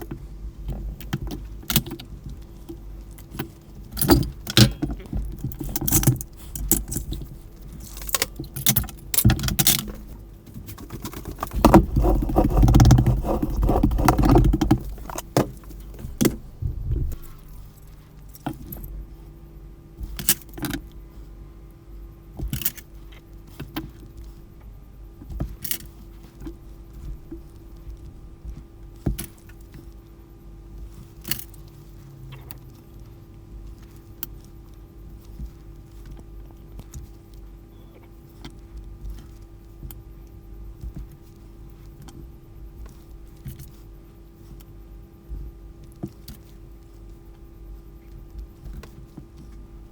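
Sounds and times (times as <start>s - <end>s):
plastic parts and screws rattling: 3.1s - 16.4s.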